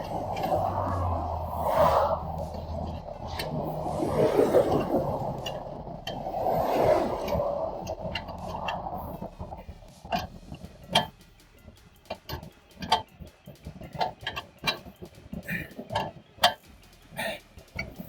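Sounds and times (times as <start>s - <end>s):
freeway traffic rushing past: 0.0s - 18.0s
sharp clicks and knocks: 7.2s - 18.0s.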